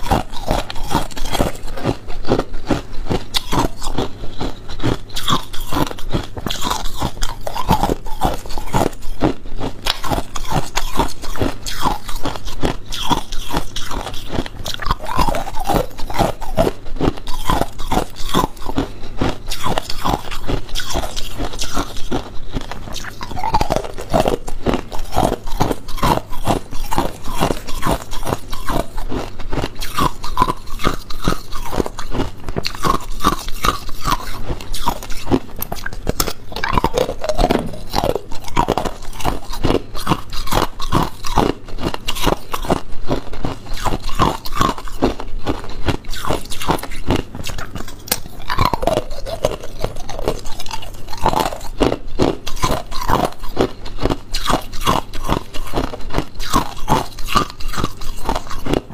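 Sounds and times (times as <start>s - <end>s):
ice being chewed: 0.0s - 58.9s.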